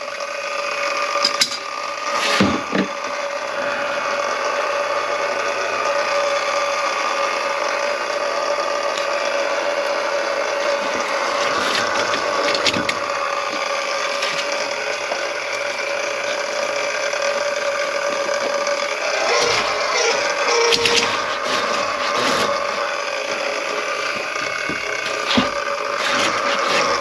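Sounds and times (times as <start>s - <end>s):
drain-cleaning machine motor humming: 0.0s - 27.0s.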